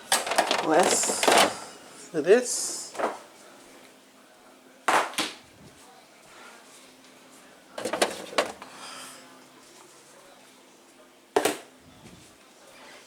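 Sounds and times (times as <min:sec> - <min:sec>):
clattering knocks: 0:07.8 - 0:08.6.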